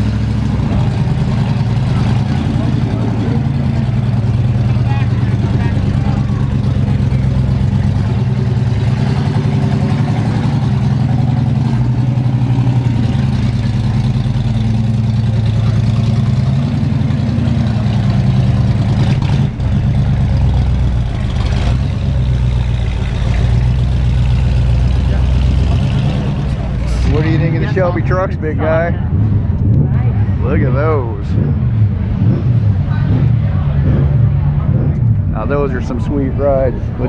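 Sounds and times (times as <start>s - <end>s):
vehicle engine idling: 0.0s - 37.0s.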